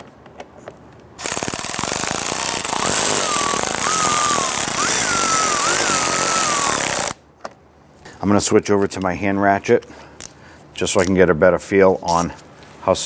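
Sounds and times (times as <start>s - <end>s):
electric ratchet clicking: 1.2s - 7.2s
ratchet motor whine: 1.2s - 7.2s.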